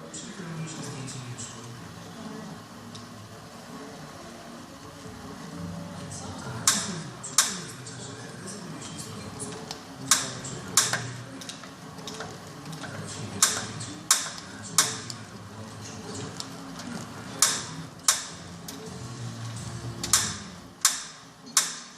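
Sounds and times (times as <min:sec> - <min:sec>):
flywheel whirring: 0:00.8 - 0:20.9
exercise bike clicking: 0:08.5 - 0:21.9.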